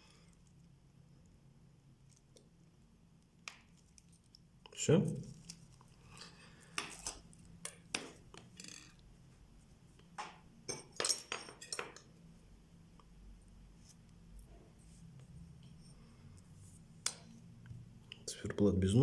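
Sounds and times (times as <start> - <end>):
small metal tools clicking and clinking: 5.2 - 9.0, 10.7 - 12.1.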